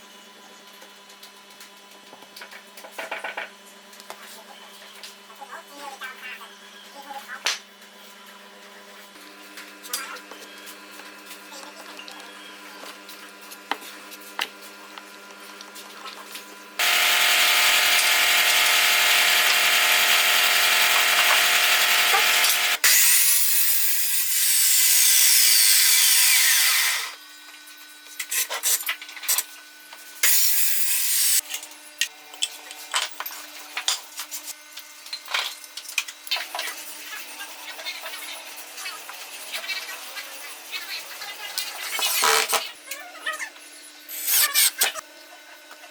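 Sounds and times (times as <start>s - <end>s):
power saw running: 16.8s - 27.2s, 30.2s - 31.4s.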